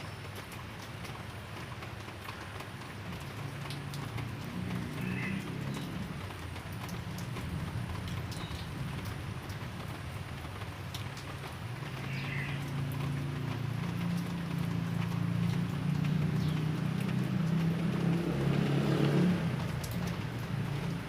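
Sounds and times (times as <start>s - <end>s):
drips: 0.0s - 21.0s
light drizzle falling: 0.0s - 21.0s.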